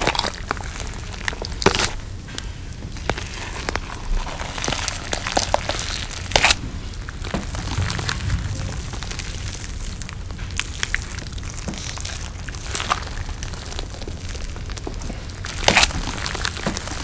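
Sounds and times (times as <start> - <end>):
chewing with wet crackles: 0.0 - 17.0
loud crunch: 0.0 - 17.0
low rumble: 6.6 - 13.6.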